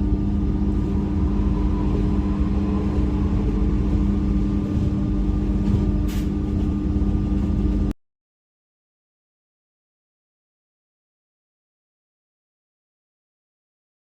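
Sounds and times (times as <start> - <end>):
electric train humming and rumbling: 0.0 - 8.0.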